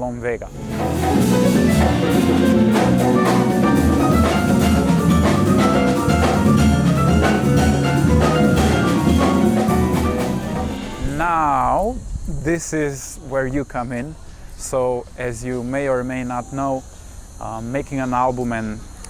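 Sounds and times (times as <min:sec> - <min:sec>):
jazz ensemble playing: 0:00.5 - 0:11.6
drum kit and percussion beat: 0:00.5 - 0:12.0.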